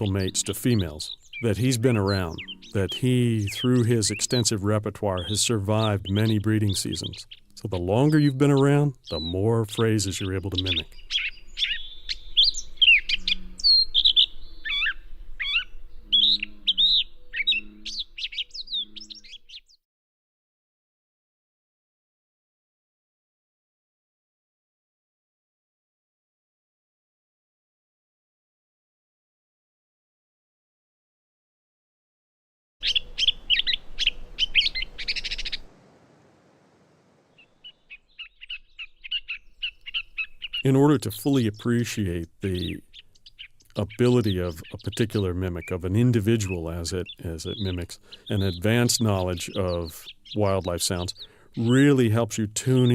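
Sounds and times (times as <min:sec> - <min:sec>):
bird singing squeaky phrases: 0:00.0 - 0:19.8, 0:32.8 - 0:35.7, 0:37.3 - 0:52.9.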